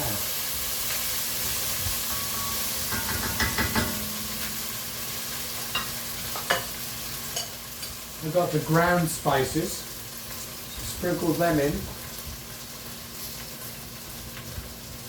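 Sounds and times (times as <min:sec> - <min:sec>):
food sizzling in a pan: 0:00.0 - 0:15.0
spoon scraping a pan: 0:02.0 - 0:08.0.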